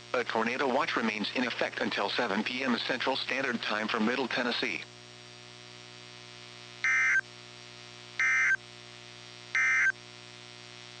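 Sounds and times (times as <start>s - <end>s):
faint steady hum: 0.0s - 11.0s
digital data tone bursts: 6.8s - 7.2s, 8.2s - 8.6s, 9.6s - 9.9s.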